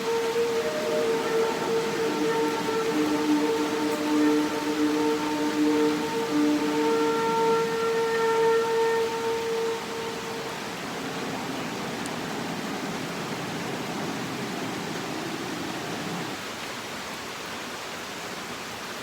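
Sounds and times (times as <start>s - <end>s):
shofar note: 0.0s - 16.4s
steady pouring rain: 0.0s - 19.0s.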